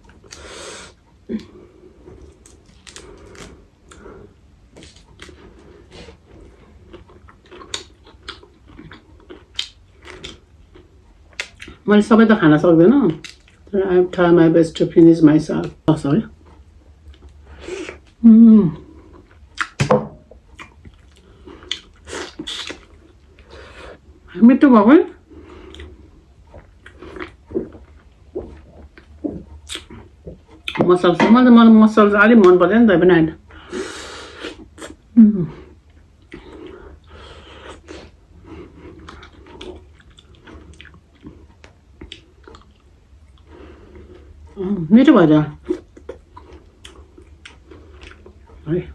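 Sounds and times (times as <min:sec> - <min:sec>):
person chewing food: 0:00.0 - 0:11.8, 0:13.2 - 0:13.7, 0:15.6 - 0:24.3, 0:25.1 - 0:30.9, 0:33.4 - 0:44.6, 0:45.6 - 0:48.6
crackles from eating seafood: 0:00.1 - 0:11.8
wet mouth clicks and smacks: 0:19.6 - 0:19.9.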